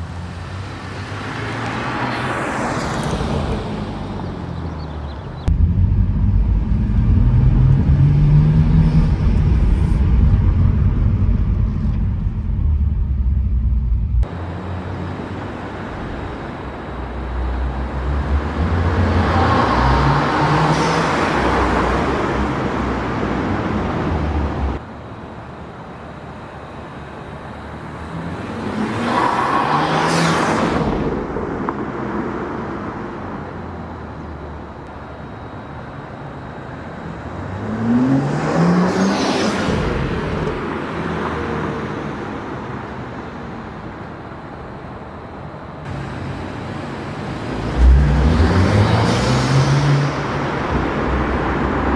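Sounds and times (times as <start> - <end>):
car engine accelerating: 0.0 - 24.8, 45.8 - 51.9.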